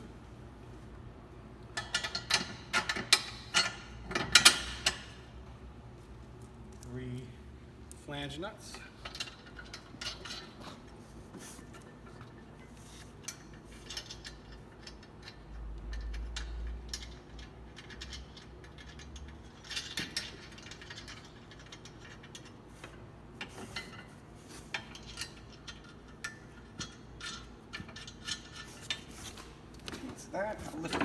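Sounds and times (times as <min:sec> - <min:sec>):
metal hardware clicking and clinking: 0:01.8 - 0:05.2.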